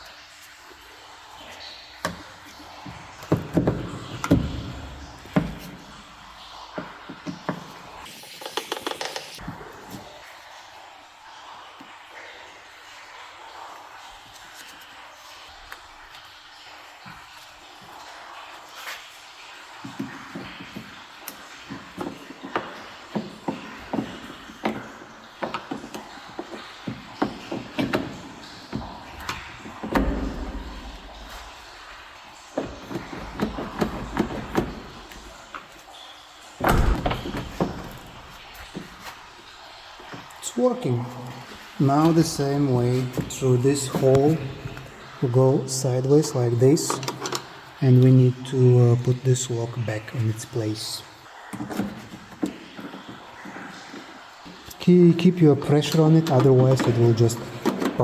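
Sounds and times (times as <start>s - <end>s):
dull thump: 36.6s - 38.2s.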